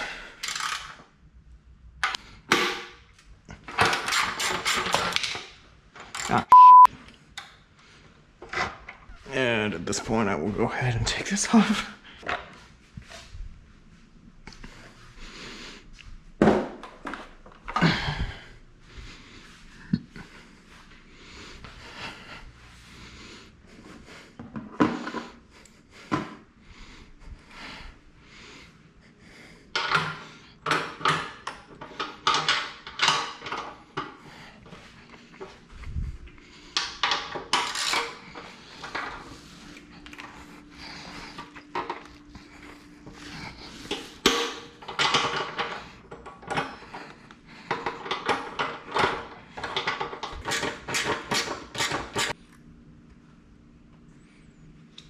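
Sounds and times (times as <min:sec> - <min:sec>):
hand tools clattering on metal: 0:43.9 - 0:46.7.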